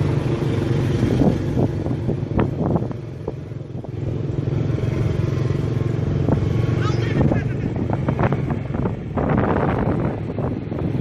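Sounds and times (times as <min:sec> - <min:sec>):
vehicle engine running: 0:00.0 - 0:11.0.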